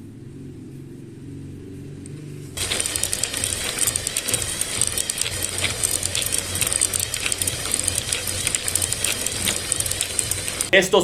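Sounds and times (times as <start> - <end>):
gearbox gears clicking and rattling: 2.6 - 10.8.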